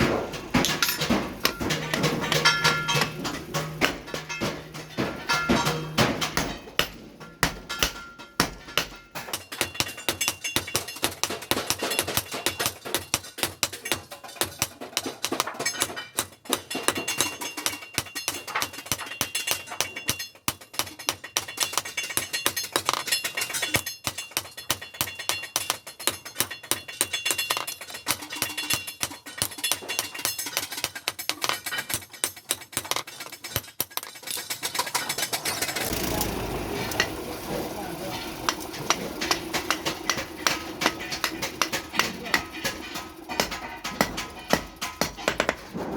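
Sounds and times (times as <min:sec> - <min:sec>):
hammer ringing on hot steel: 0:00.0 - 0:14.0, 0:35.8 - 0:45.8.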